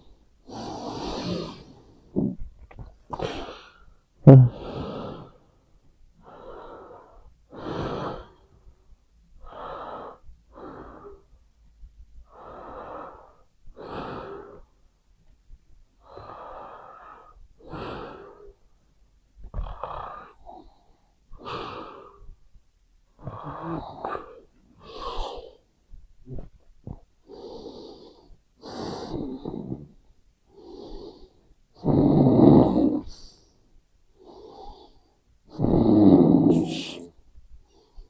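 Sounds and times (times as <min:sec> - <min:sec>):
person snoring wheezily: 0:04.3 - 0:05.0, 0:31.8 - 0:33.2, 0:35.6 - 0:37.1.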